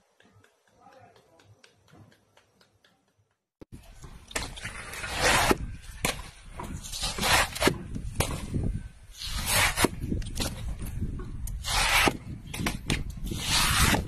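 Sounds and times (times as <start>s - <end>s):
sharp clicks: 0.1s - 3.4s
rough rubbing strokes: 4.6s - 6.0s, 6.8s - 7.9s, 9.1s - 10.0s, 11.6s - 12.3s, 13.2s - 14.0s.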